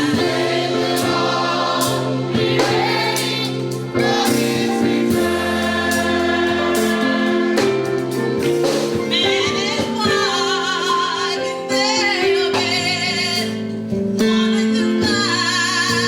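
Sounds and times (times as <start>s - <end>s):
sustained instrumental chords: 0.0s - 11.1s
person singing gospel melody: 0.0s - 16.0s.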